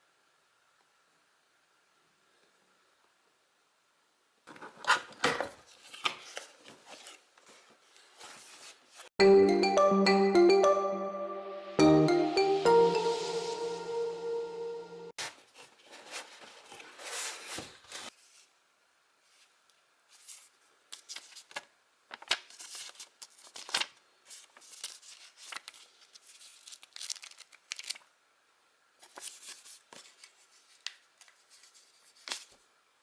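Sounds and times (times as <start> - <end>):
packaging rustling and tearing: 21.0 - 28.1.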